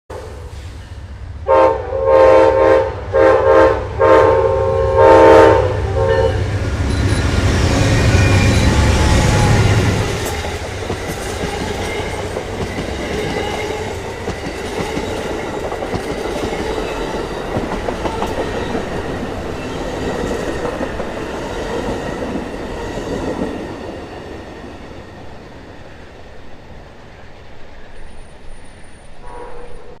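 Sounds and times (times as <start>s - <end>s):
train horn blasts: 1.4s - 6.6s, 29.2s - 30.0s
train cars clattering on rails: 6.5s - 25.4s.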